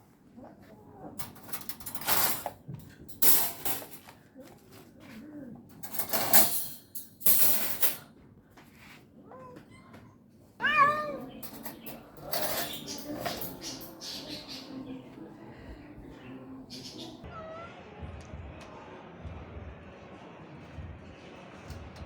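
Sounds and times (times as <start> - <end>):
cat growling: 4.4 - 5.7, 10.6 - 11.4
faint cat meow: 9.2 - 11.4, 17.2 - 17.9.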